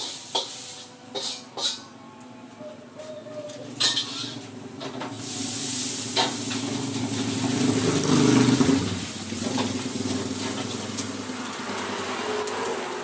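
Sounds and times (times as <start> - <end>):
noodles sizzling in a pan: 0.0 - 1.7, 5.1 - 12.4.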